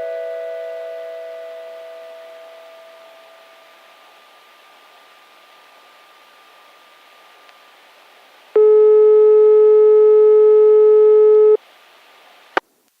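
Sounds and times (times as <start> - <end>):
faint hiss: 11.6 - 13.0.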